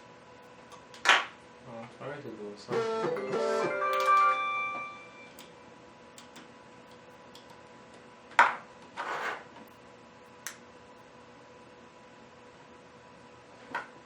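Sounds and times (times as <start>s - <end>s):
faint steady hum: 0.0s - 14.0s
small clicks and taps: 6.2s - 7.6s.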